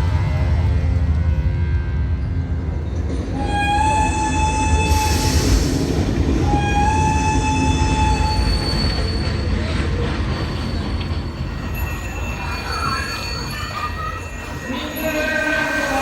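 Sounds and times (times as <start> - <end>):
steady low rumble: 0.0 - 3.5
train horn tone: 3.3 - 5.5, 6.4 - 8.8.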